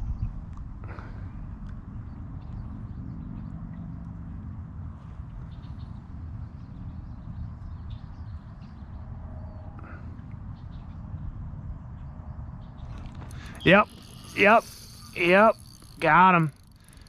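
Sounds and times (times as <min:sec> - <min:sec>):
low outdoor rumble: 0:00.0 - 0:17.0
bird chirps: 0:12.0 - 0:16.6.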